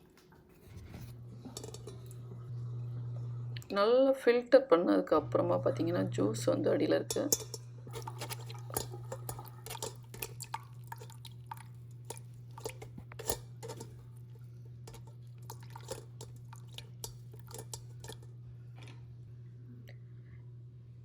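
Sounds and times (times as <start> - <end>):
steady low hum: 0.6 - 4.0, 4.6 - 21.0
utensils tapping and scraping on sieve: 1.4 - 2.2, 7.1 - 18.3.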